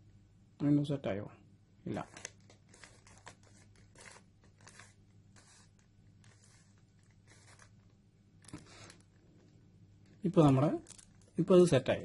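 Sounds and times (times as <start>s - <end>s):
low steady hum: 0.0s - 12.0s
plastic puzzle cube turning: 10.4s - 11.4s.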